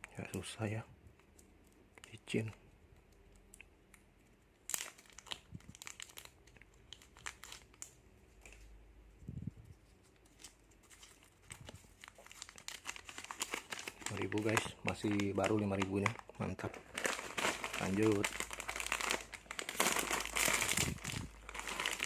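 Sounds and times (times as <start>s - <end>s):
plastic wrapper crinkling and tearing: 4.6s - 8.8s, 9.8s - 22.0s.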